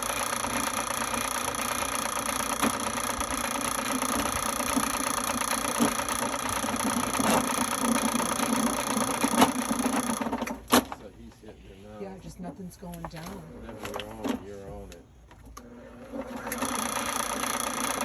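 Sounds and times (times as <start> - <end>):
drain-cleaning machine running: 0.0 - 10.5, 15.6 - 18.0.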